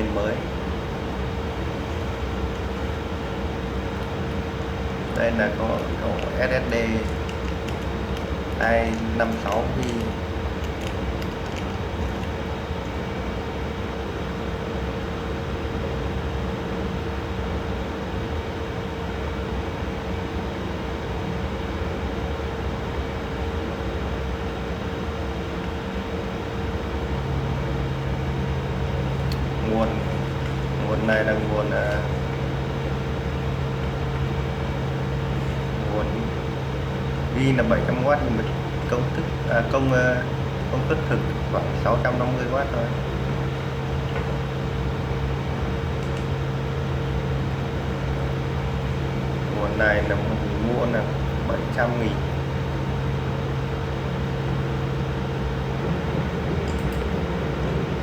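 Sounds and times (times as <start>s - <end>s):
fans whirring: 0.0s - 58.0s
low hum: 25.7s - 58.0s.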